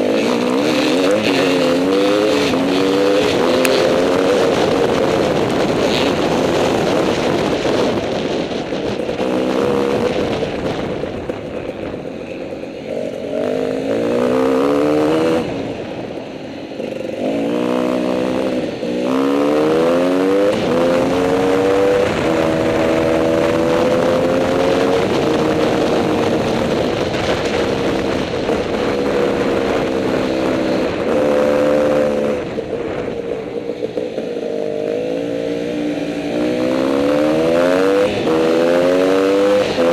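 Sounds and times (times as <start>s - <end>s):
motorcycle engines revving: 0.0s - 39.9s.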